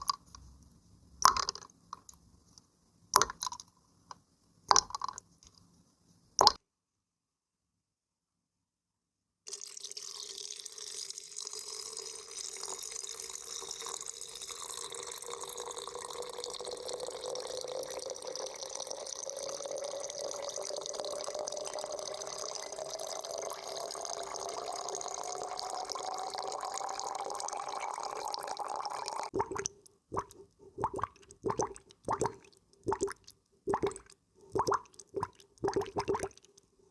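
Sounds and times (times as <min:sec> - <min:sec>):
water filling a container: 0:01.2 - 0:01.7, 0:03.2 - 0:03.6, 0:04.7 - 0:05.2, 0:09.5 - 0:36.5.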